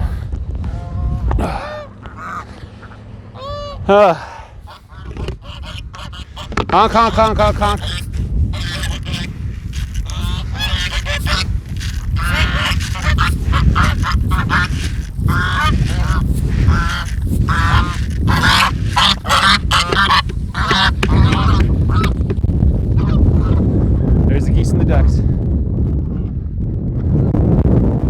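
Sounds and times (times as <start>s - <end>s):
wind rumble on microphone: 0.0s - 28.0s
geese honking: 1.6s - 22.2s.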